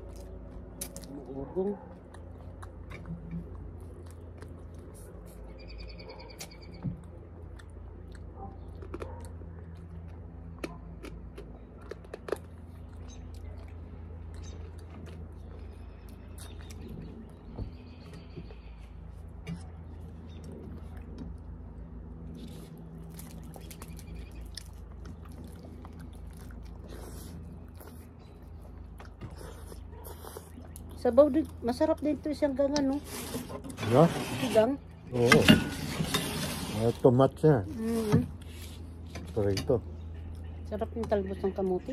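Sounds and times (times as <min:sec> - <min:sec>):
person chewing food: 0:00.0 - 0:32.0
steady low hum: 0:00.0 - 0:41.9.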